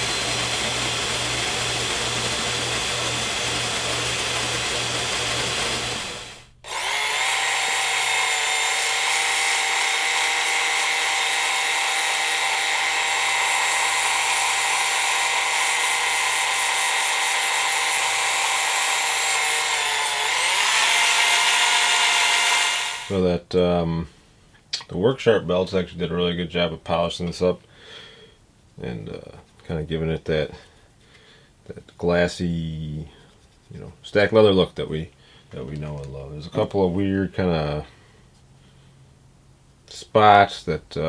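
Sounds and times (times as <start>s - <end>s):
belt sander whining: 0.0s - 23.2s.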